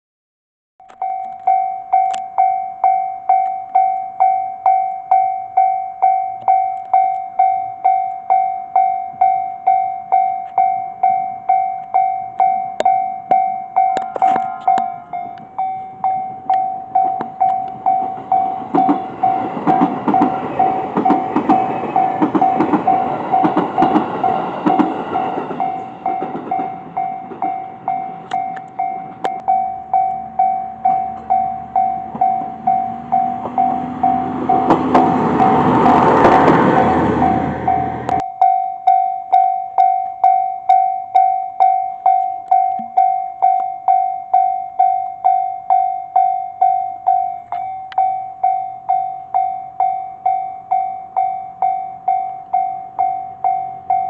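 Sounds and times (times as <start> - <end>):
level-crossing warning bell ringing: 0.8 - 54.0
train wheels clattering over rails: 17.7 - 28.2, 32.1 - 38.2.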